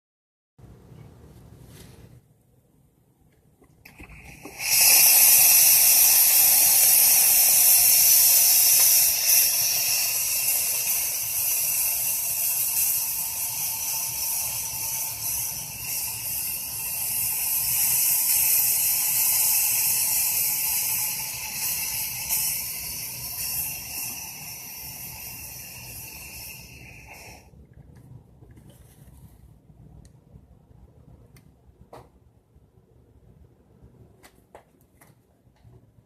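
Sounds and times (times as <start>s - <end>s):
steam wand hissing: 3.9s - 27.6s.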